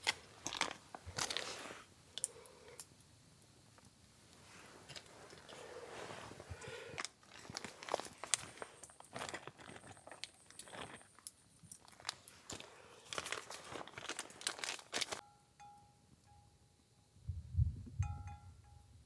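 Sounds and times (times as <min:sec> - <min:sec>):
small clicks and crinkles: 0:00.0 - 0:03.0, 0:03.7 - 0:05.7, 0:06.4 - 0:15.2.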